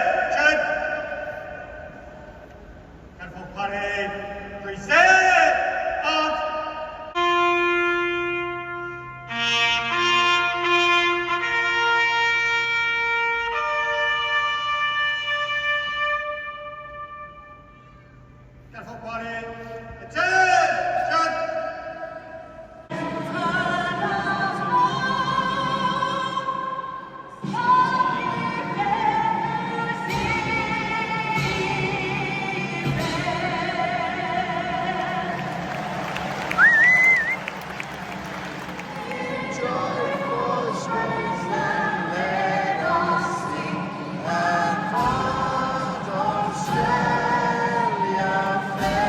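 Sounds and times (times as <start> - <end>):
choir singing long held notes: 22.9 - 36.6, 37.3 - 49.0.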